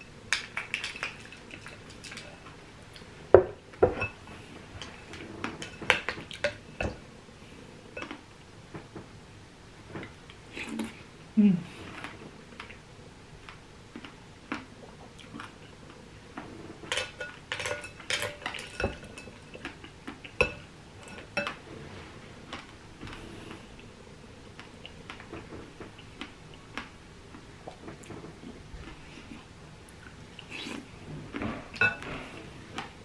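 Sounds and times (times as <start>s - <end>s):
spoon clinking against a bowl: 16.9s - 19.6s.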